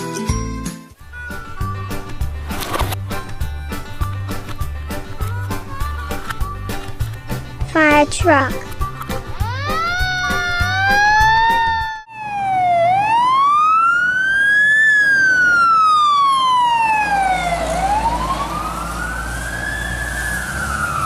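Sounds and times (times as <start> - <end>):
fire engine siren wailing: 9.3 - 21.0.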